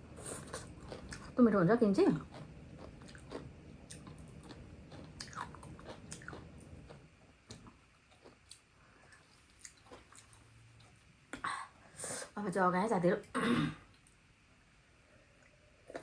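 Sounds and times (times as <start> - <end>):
chewing and biting crunchy food: 0.2 - 1.4, 2.0 - 10.5.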